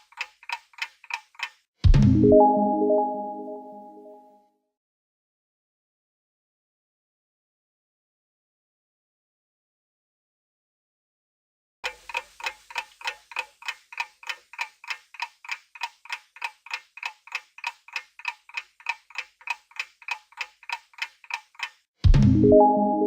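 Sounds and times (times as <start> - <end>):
clock ticking: 0.0 - 1.7, 11.8 - 21.9.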